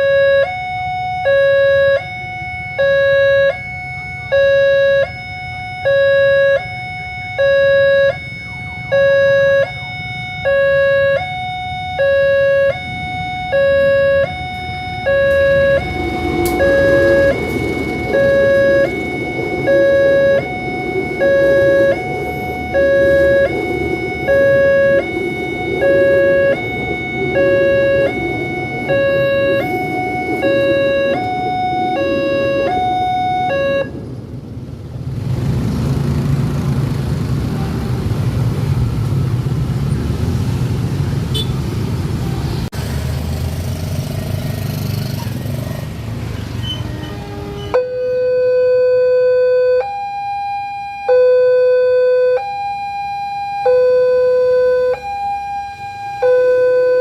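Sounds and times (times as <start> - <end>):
two-tone crossing alarm: 0.0 - 34.5, 46.7 - 57.0
steady low rumble: 6.9 - 39.7.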